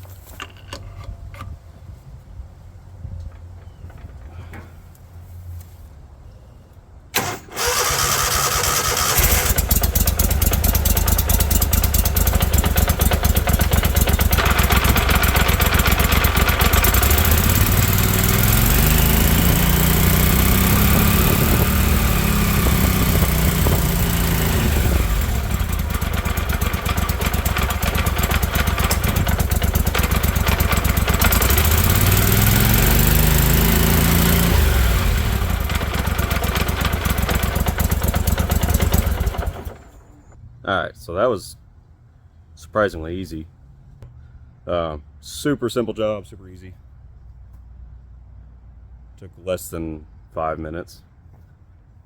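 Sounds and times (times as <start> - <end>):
boat motor engine starting and running: 7.2 - 40.4
propeller spinning: 7.2 - 40.4.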